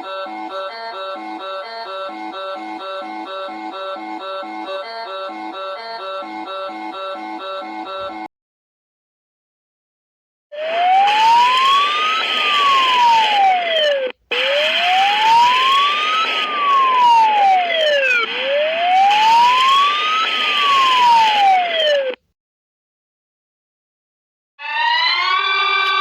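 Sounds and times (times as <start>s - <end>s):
alarm siren wailing: 0.0s - 8.3s, 10.5s - 22.2s, 24.6s - 26.0s.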